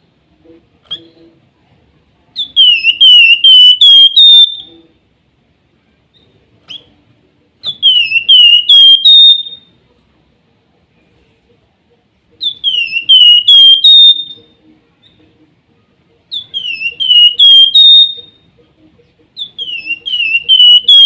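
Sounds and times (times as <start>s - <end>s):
bird whistled song: 2.4s - 4.9s, 7.6s - 9.7s, 12.4s - 15.2s, 16.3s - 18.5s, 19.1s - 21.0s.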